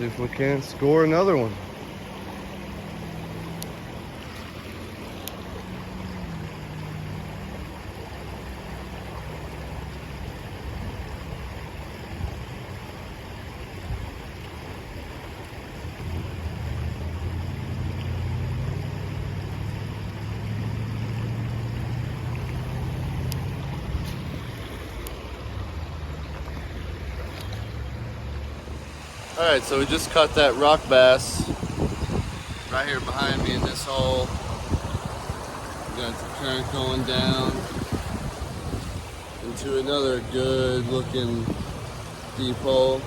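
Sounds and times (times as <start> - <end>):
flowing river water: 0.0 - 43.0
wind rumble on microphone: 25.5 - 43.0.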